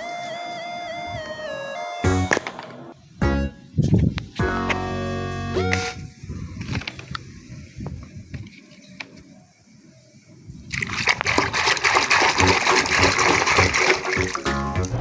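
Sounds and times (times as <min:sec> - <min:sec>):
water spraying and splashing: 0:10.6 - 0:15.0.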